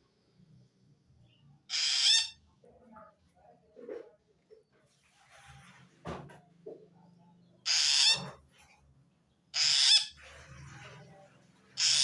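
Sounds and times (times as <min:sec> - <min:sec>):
shrike harsh screeching calls: 0:01.7 - 0:02.4, 0:07.7 - 0:08.3, 0:09.6 - 0:10.2, 0:11.8 - 0:12.0.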